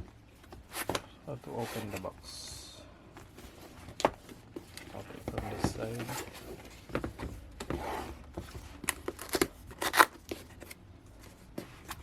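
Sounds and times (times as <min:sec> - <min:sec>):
packaging scraping and rustling: 0:03.4 - 0:12.0.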